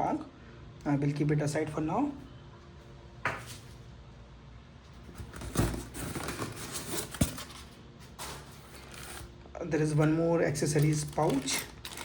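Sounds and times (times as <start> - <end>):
packaging rustling: 5.2 - 9.4, 10.8 - 12.0.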